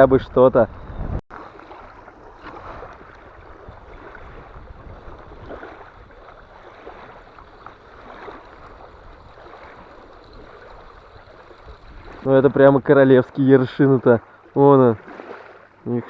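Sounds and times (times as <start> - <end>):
wind rumbling on microphone: 0.0 - 12.8
small waves lapping at shoreline: 1.3 - 16.0.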